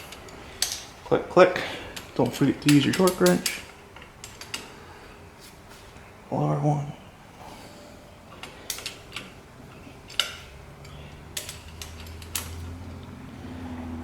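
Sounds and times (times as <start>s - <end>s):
metallic clicks of a wrench: 10.1s - 12.8s.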